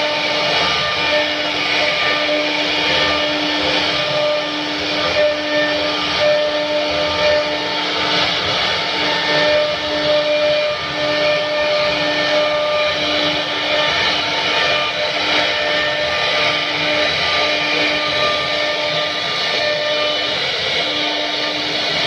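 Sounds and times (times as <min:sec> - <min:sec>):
harsh cutting noise: 0:00.0 - 0:22.0
router spindle whine: 0:00.0 - 0:22.0.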